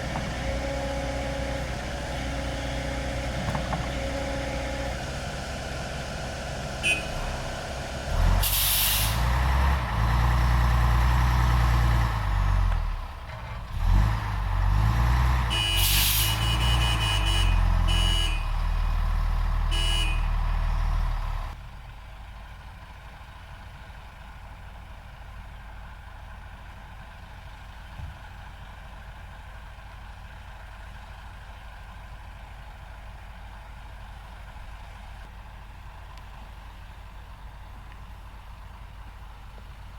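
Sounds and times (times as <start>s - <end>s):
heavy diesel engine revving: 0.0s - 21.6s.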